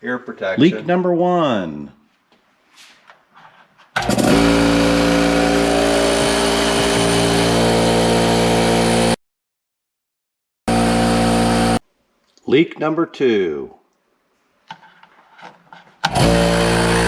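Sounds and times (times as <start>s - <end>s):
air compressor running: 4.0s - 9.2s, 10.7s - 11.8s, 16.0s - 17.0s.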